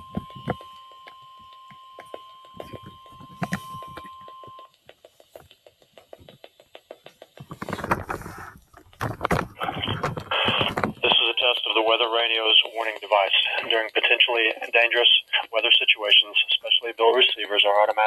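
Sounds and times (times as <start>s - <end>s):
weather radio alarm beep: 0.0s - 4.7s, 9.6s - 18.0s
clicks and crackle: 0.0s - 18.0s
rush of static: 9.2s - 18.0s.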